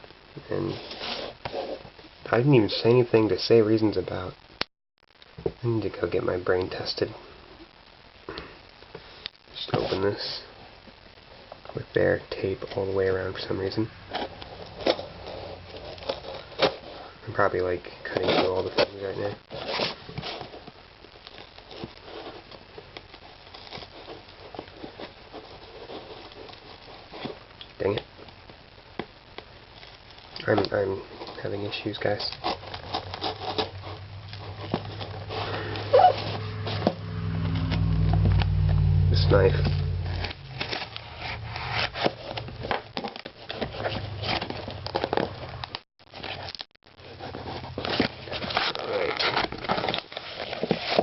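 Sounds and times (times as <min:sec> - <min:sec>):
knife cutting taped package: 0:32.0 - 0:36.4, 0:47.2 - 0:51.0.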